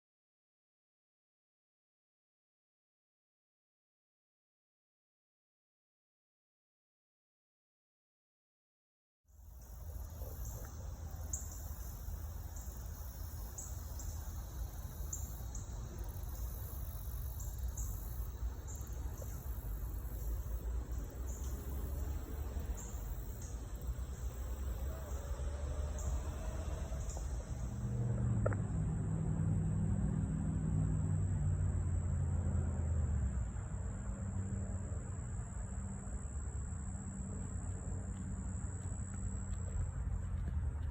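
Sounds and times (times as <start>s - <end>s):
insects chirping: 9.4s - 40.9s
low steady rumble: 9.6s - 40.9s.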